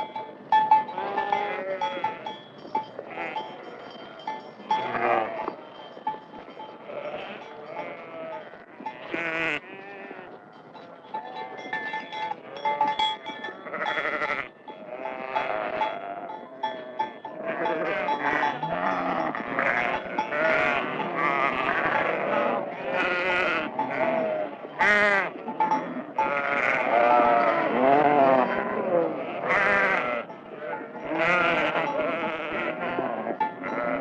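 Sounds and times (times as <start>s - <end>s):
thin steady ringing: 0.0s - 9.5s, 10.5s - 21.6s
livestock bleating chorus: 0.0s - 34.0s.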